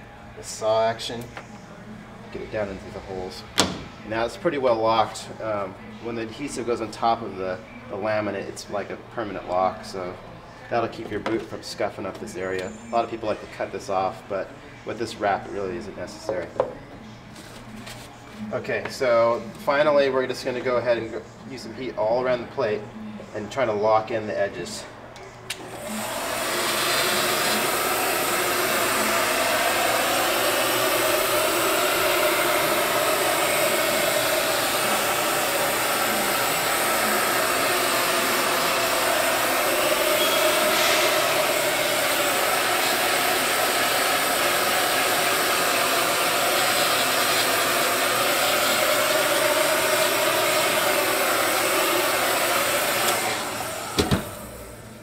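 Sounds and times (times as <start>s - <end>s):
heat gun blowing hiss: 25.5s - 54.6s.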